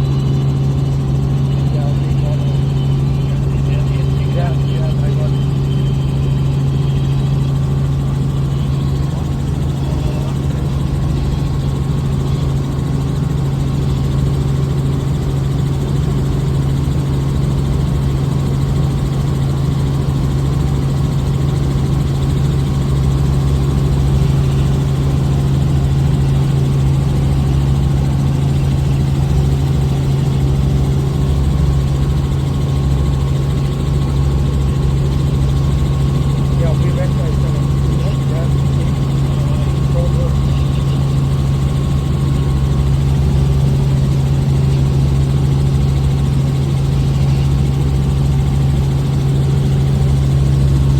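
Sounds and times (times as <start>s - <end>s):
helicopter engine and rotors: 0.0s - 50.9s.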